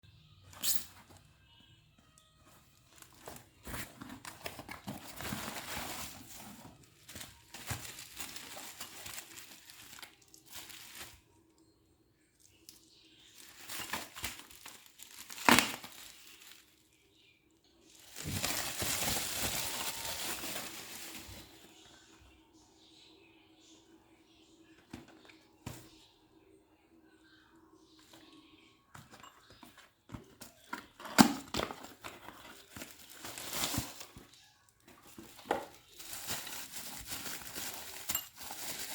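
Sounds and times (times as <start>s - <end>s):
packaging crinkling and rustling: 2.4s - 11.3s, 13.2s - 16.9s, 17.9s - 21.8s, 29.5s - 38.9s.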